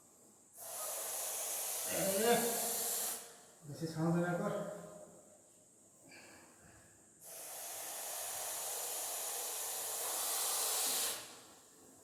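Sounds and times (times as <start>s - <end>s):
snake hissing: 0.0s - 3.5s, 7.2s - 11.7s.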